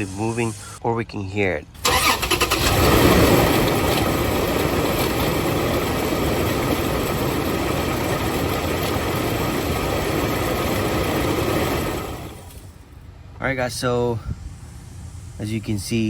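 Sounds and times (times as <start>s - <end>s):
car engine idling: 1.6s - 15.9s
failing water pump noise: 1.8s - 12.7s.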